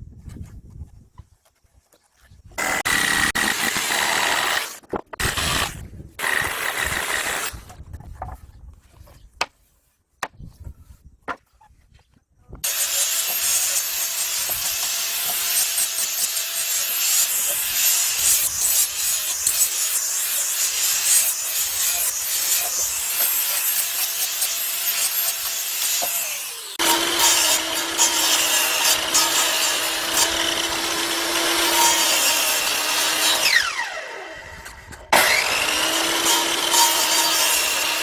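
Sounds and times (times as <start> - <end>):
power tool working on wood: 2.6 - 7.5, 12.6 - 38.0.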